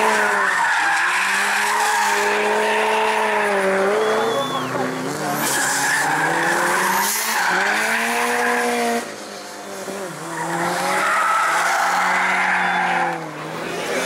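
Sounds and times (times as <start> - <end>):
car engine revving high: 1.1 - 14.0.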